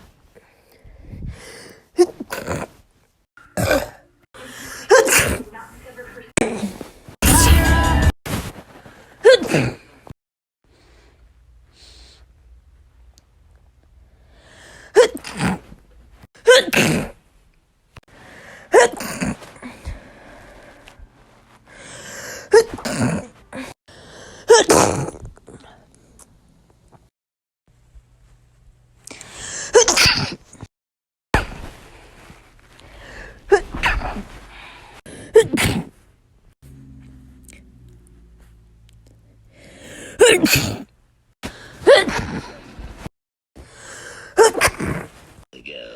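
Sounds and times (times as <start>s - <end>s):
person sneezing: 4.6s - 5.4s, 16.4s - 17.2s, 29.5s - 30.4s, 35.3s - 35.9s, 39.9s - 40.9s, 44.4s - 45.1s.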